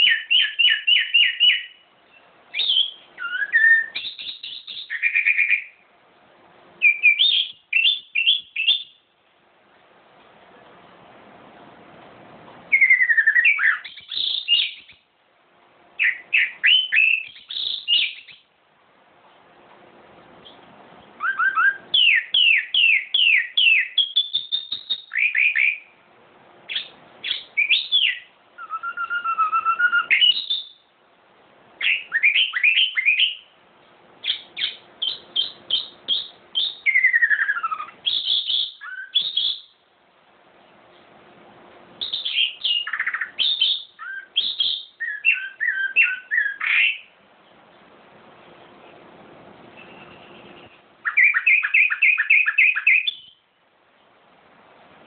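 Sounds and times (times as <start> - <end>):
songbird singing: 0.0 - 6.0, 6.8 - 9.2, 12.7 - 15.1, 16.0 - 18.6, 20.4 - 31.0, 31.8 - 33.6, 34.2 - 39.9, 41.9 - 54.2
faint steady hum: 0.0 - 55.0.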